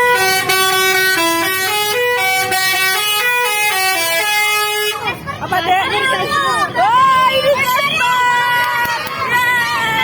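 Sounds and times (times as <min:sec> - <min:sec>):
bus horn playing a quick tune: 0:00.0 - 0:05.1.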